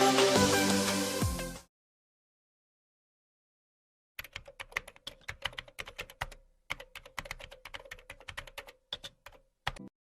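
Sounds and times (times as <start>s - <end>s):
keyboard typing: 4.2s - 9.9s.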